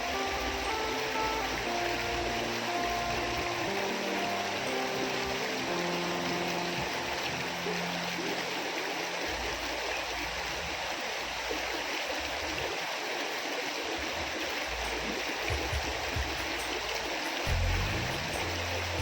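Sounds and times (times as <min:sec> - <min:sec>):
small river flowing: 0:00.0 - 0:19.0.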